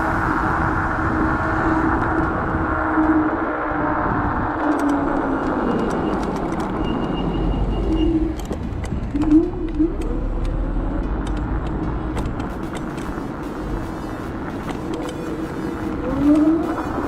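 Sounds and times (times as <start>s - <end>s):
wind and road noise: 0.0s - 17.0s
wavering tone: 13.5s - 17.0s.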